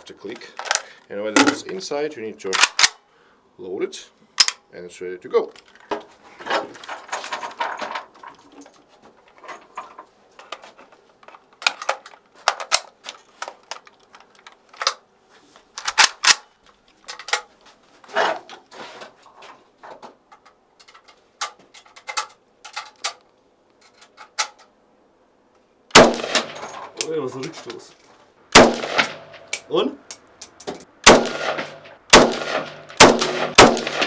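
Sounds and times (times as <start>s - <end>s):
rifle clicks and metallic clacks: 0.3s - 1.8s, 2.5s - 3.0s, 4.4s - 4.6s, 11.2s - 15.0s, 15.8s - 17.5s, 20.3s - 24.7s, 25.9s - 34.0s.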